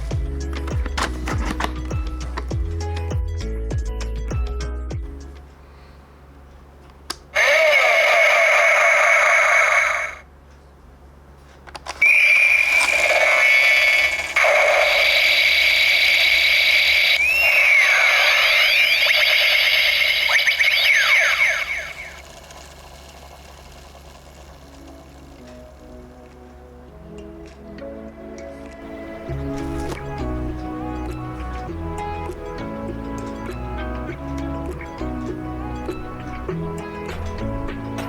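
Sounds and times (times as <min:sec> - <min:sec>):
toy click: 0:07.1 - 0:10.2, 0:11.7 - 0:25.9
sweeping gliding electronic tones: 0:12.0 - 0:22.8
warbling electronic effect: 0:12.0 - 0:24.9.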